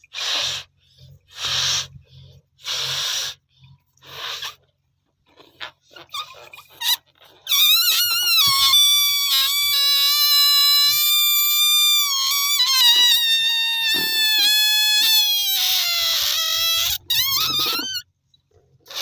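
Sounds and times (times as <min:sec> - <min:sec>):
balloon squealing as air escapes: 0:06.1 - 0:18.1.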